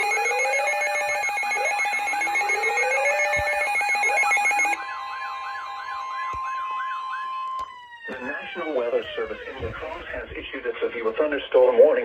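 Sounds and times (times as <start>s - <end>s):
pulsing ringing tones: 0.0s - 4.8s
steady high tone: 0.0s - 6.4s
rising electronic whoops: 0.0s - 10.1s
fast warbling siren: 0.0s - 10.2s.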